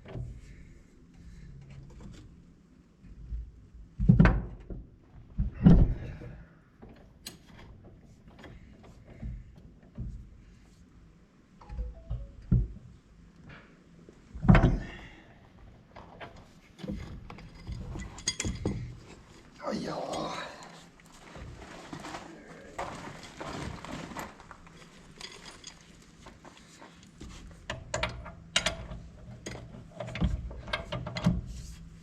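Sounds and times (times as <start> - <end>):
tools and metal parts clanking: 16.0 - 20.4, 21.4 - 31.5.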